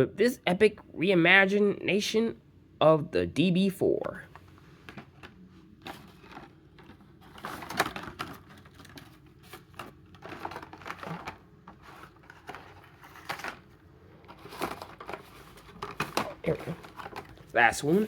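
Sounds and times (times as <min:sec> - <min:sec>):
plastic packages clicking and rustling: 0:04.3 - 0:18.0.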